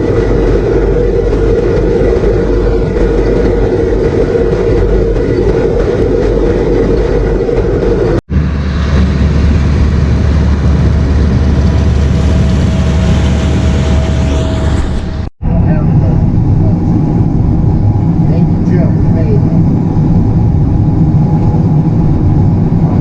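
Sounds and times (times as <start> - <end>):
farm machinery engine running: 0.0 - 15.3.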